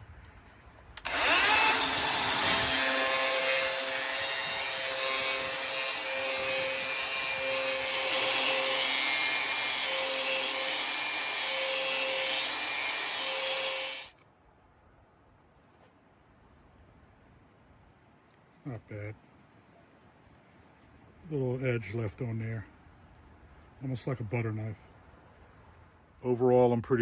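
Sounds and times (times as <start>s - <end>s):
angle grinder grinding steel: 1.0s - 14.1s.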